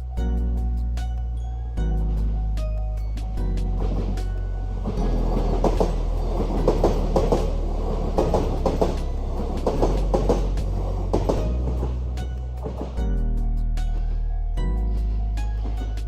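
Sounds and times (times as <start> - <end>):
electric train rumbling past: 3.6 - 13.2
wheels knocking on track: 4.9 - 13.0.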